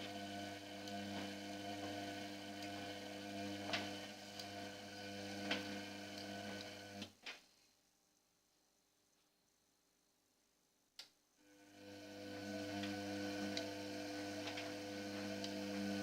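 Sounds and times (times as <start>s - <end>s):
washing machine humming: 0.0s - 7.1s, 11.4s - 16.0s.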